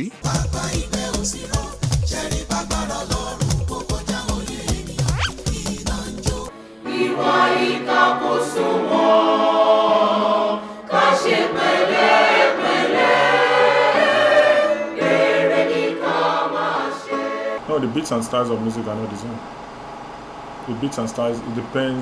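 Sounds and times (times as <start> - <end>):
choir singing held notes: 6.3 - 19.4.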